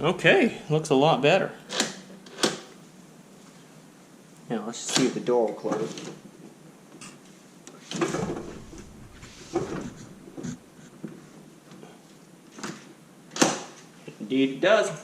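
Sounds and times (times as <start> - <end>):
door handling knocks and rustles: 8.0 - 10.8.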